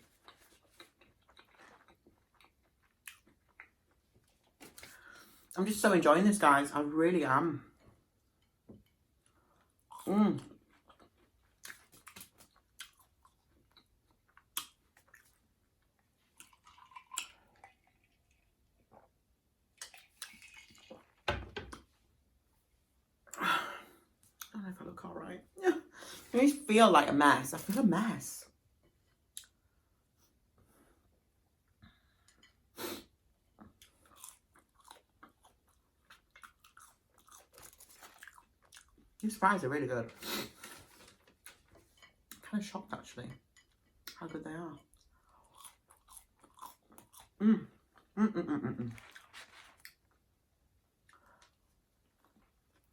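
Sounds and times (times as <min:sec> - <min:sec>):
chewing with mouth clicks: 0:00.0 - 0:05.0, 0:09.2 - 0:19.2, 0:19.8 - 0:21.2, 0:33.6 - 0:39.1, 0:44.8 - 0:48.2
person crunching fried food: 0:09.9 - 0:15.4, 0:16.4 - 0:18.4, 0:33.8 - 0:39.0, 0:45.3 - 0:47.4, 0:49.0 - 0:50.2.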